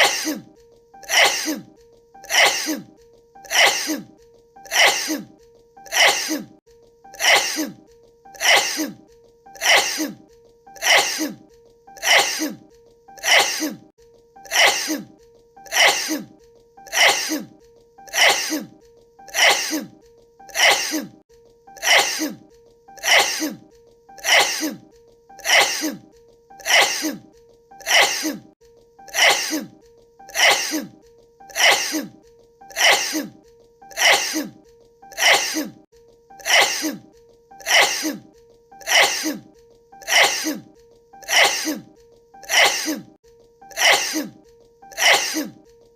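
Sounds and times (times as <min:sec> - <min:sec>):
woman sneezing: 0:00.0 - 0:02.9, 0:03.5 - 0:04.1, 0:04.7 - 0:06.6, 0:07.2 - 0:07.8, 0:08.4 - 0:09.0, 0:09.6 - 0:10.2, 0:10.8 - 0:11.4, 0:12.0 - 0:12.6, 0:13.2 - 0:13.9, 0:14.5 - 0:15.1, 0:15.7 - 0:16.3, 0:16.9 - 0:18.7, 0:19.3 - 0:19.9, 0:20.5 - 0:21.2, 0:21.8 - 0:22.4, 0:23.0 - 0:23.6, 0:24.2 - 0:24.8, 0:25.4 - 0:28.5, 0:29.1 - 0:35.8, 0:36.4 - 0:45.6.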